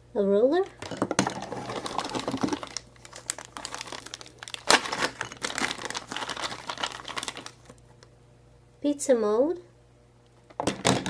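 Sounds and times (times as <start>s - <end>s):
plastic packaging crinkling: 1.0s - 8.0s.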